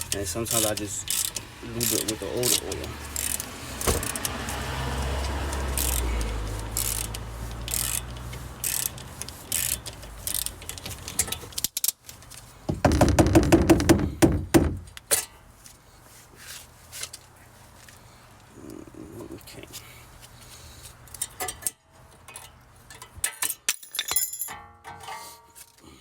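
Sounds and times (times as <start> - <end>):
metal hand tools clanking: 0.0 - 11.6
rapid ratchet clicks: 0.0 - 12.0.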